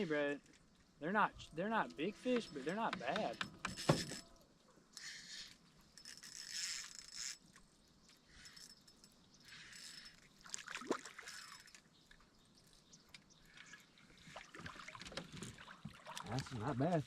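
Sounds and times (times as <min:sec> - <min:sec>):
faint water splashing and trickling: 0:03.8 - 0:17.0.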